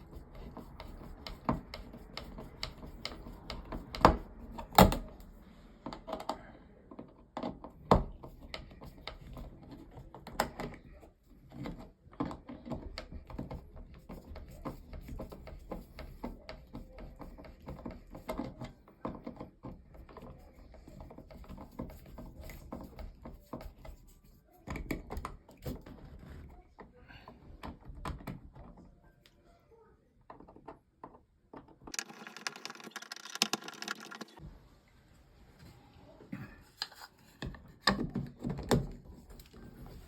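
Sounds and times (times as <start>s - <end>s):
dashboard parts clicking and knocking: 0.2s - 5.2s.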